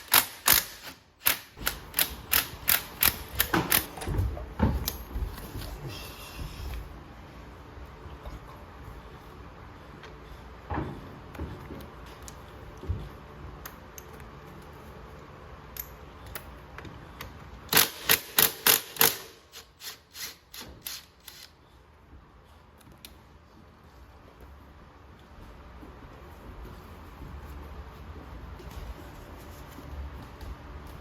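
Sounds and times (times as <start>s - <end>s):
socket ratchet clicking: 0.0s - 4.0s.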